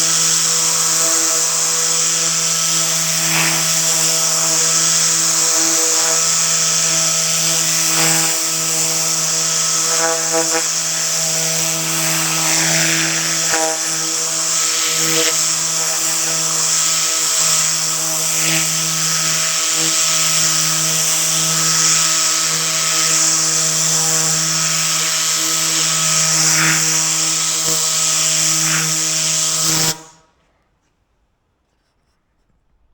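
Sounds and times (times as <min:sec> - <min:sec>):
compressed air hissing: 0:00.0 - 0:30.2
whirring hum: 0:00.0 - 0:30.2.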